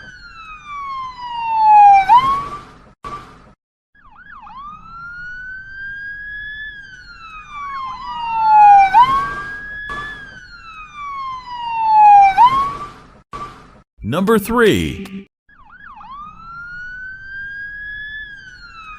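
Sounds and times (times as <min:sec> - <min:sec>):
ambulance siren wailing: 0:07.5 - 0:09.2.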